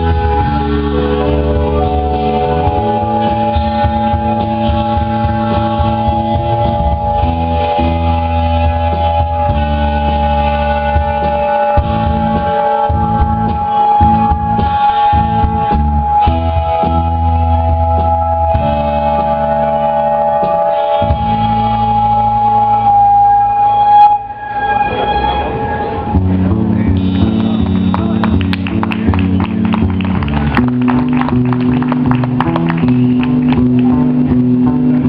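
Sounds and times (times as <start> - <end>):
live rock band playing: 0.0 - 24.3, 26.1 - 35.0
held synthesizer tone: 19.9 - 26.4.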